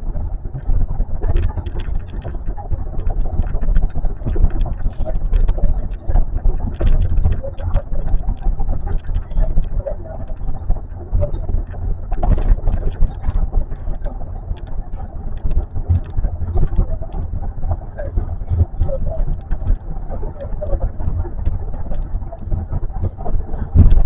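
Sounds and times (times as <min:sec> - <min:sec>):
train running low rumble: 0:00.0 - 0:24.0
train clicks and rattles: 0:00.6 - 0:17.5.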